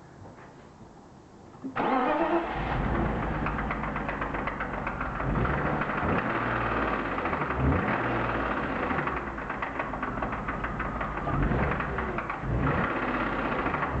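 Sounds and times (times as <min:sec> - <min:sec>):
car engine idling: 0:01.8 - 0:14.0
fast regular engine knocking: 0:03.4 - 0:14.0.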